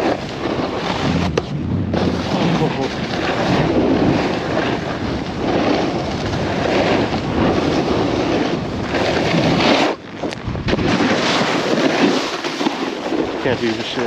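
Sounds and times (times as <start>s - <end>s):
wind buffeting microphone: 0.0s - 11.9s
snowboard scraping over snow: 0.0s - 14.0s.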